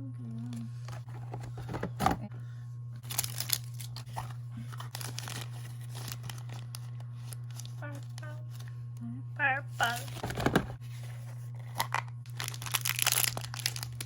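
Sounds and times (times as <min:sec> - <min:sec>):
packaging tearing and crinkling: 0:03.0 - 0:08.7, 0:11.6 - 0:14.0.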